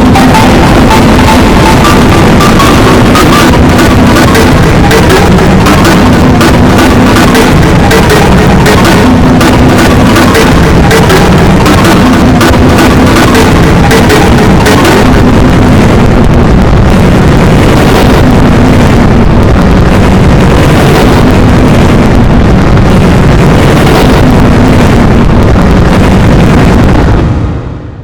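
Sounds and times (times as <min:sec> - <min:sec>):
distorted layered electronic alarms: 0:00.0 - 0:16.1
steady low hum: 0:00.0 - 0:28.0.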